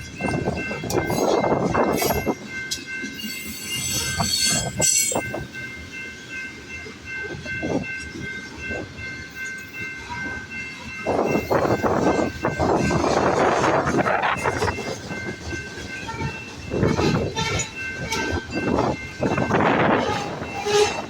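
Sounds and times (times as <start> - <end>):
train wheels clattering on rails: 0.0 - 21.0
high-pitched wheel squeal: 3.2 - 5.2.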